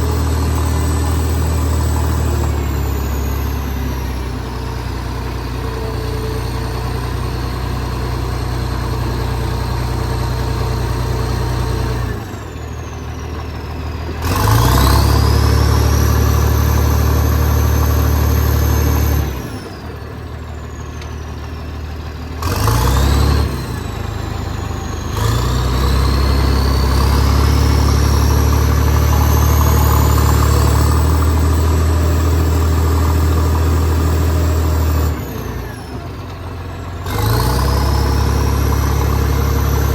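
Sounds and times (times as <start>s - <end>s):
diesel engine revving: 0.0s - 39.9s
high engine whine: 0.0s - 39.9s.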